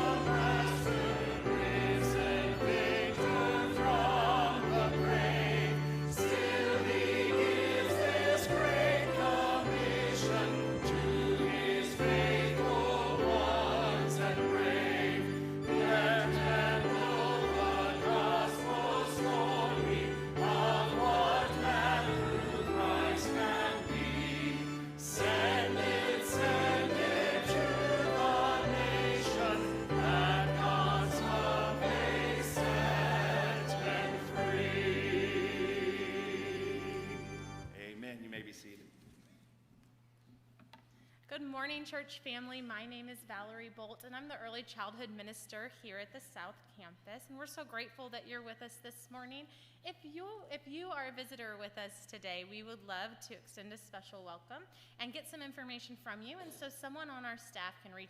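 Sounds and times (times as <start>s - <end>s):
choir singing a hymn: 0.0s - 37.8s.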